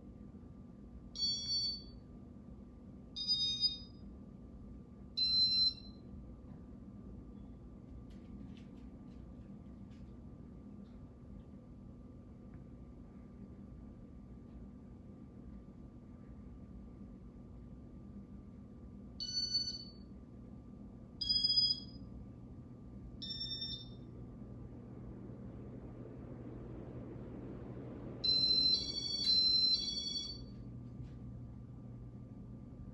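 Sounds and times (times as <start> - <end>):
faint steady hum: 0.0 - 32.9
fan control beeps: 1.2 - 2.0, 3.2 - 4.1, 5.2 - 6.1, 19.2 - 20.2, 21.2 - 22.2, 23.1 - 31.0
high-pitched electronic chimes: 28.2 - 30.5.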